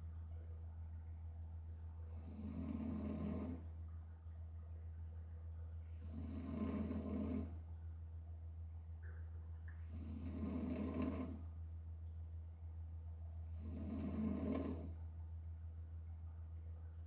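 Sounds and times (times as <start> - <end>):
steady low hum: 0.0 - 17.0
woman snoring: 2.1 - 3.6, 5.9 - 7.6, 9.9 - 11.4, 13.5 - 15.0.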